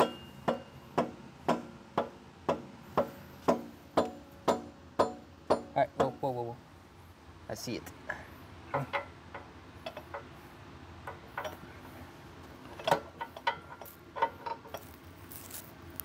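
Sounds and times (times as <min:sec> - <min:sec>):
metallic clicks and knocks: 0:08.7 - 0:10.3, 0:11.0 - 0:11.6, 0:12.6 - 0:14.9.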